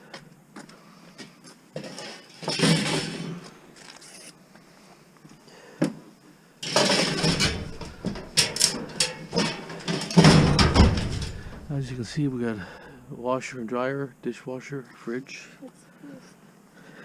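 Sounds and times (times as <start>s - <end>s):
metallic clattering and knocking: 1.8s - 3.3s, 6.6s - 12.2s
scrap metal scraping rattle: 1.8s - 3.4s, 6.6s - 12.3s.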